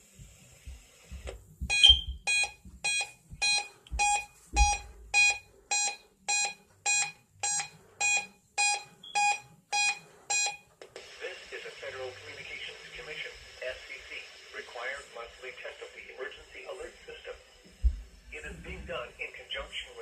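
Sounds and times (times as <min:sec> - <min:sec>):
electronic alarm beeps: 0:01.7 - 0:10.7.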